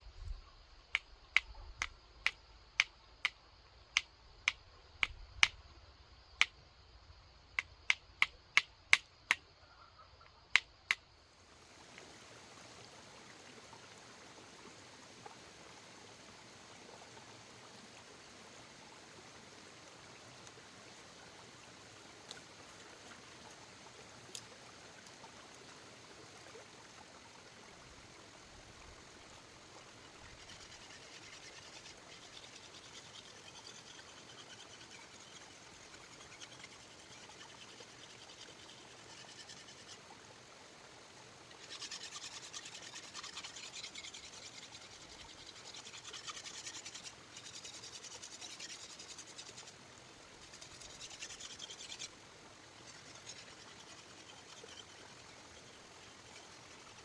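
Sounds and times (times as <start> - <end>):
steady hiss: 10.6 - 57.0
faint tick: 24.3 - 25.2.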